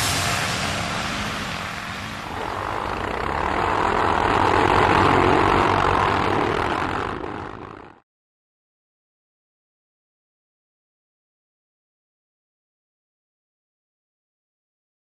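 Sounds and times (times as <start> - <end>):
quad bike engine running: 0.8 - 8.0.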